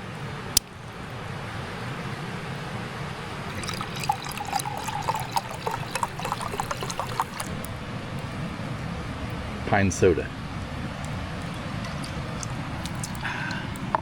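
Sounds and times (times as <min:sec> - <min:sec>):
fizzing pops and crackles: 0:03.5 - 0:07.7
soda pouring into a cup: 0:03.5 - 0:07.7.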